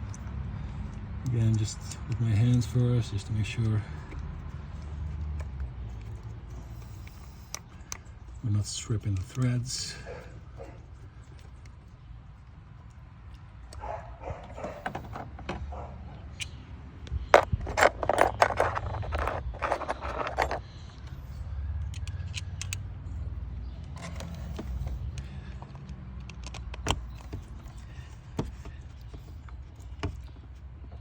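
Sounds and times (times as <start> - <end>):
metal parts and tools clinking: 17.2 - 21.1.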